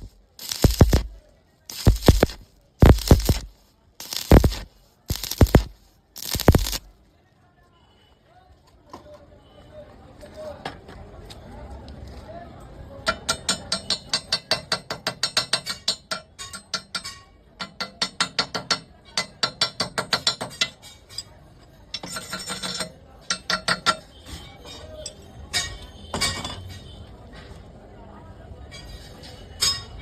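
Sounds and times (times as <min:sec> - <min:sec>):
sharp metallic taps: 0:00.0 - 0:01.1, 0:01.7 - 0:06.9.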